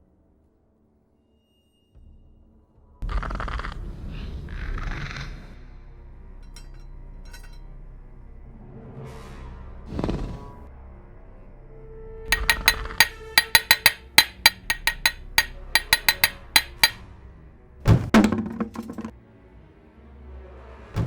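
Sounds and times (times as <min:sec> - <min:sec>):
clattering metal impact: 0:12.4 - 0:17.0
metallic clicks and clinks: 0:12.4 - 0:17.0.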